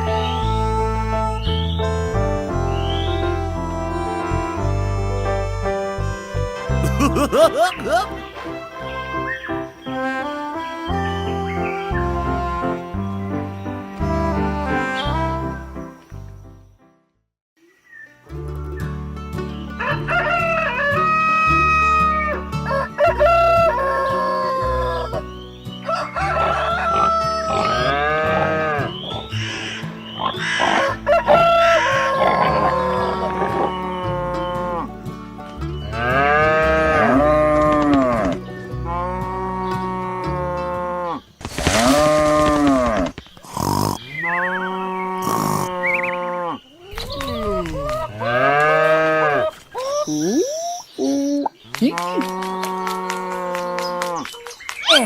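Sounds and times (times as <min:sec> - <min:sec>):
background music with bass: 0:00.0 - 0:16.8, 0:18.3 - 0:41.3
rooster crowing: 0:19.8 - 0:25.2, 0:25.8 - 0:28.8, 0:30.6 - 0:33.6.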